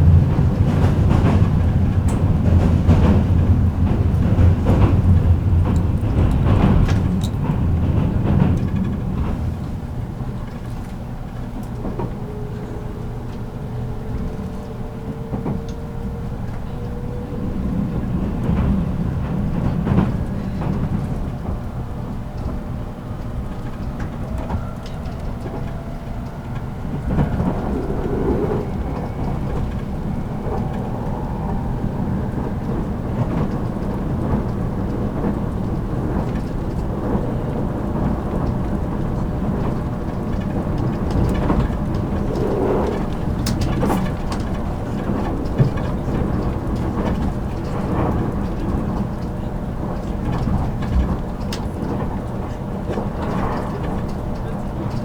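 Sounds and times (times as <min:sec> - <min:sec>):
train wheels rumbling on rail: 0:00.0 - 0:55.0
faint gliding whines: 0:24.2 - 0:32.9, 0:40.8 - 0:45.0.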